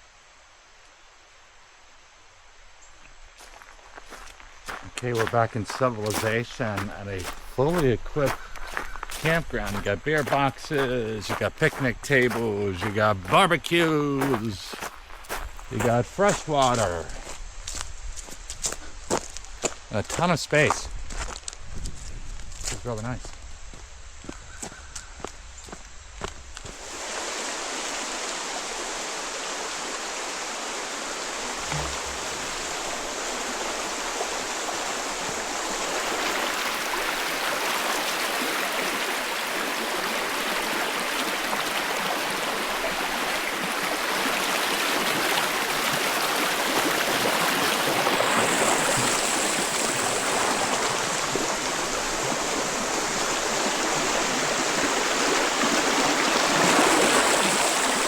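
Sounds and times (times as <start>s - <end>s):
creek rushing over rocks: 3.4s - 17.4s, 26.7s - 58.0s.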